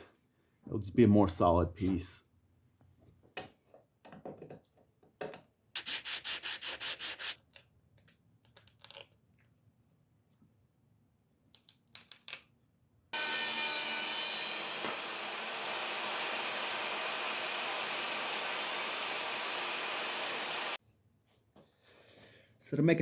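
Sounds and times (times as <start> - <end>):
power tool whirring: 13.2 - 20.8.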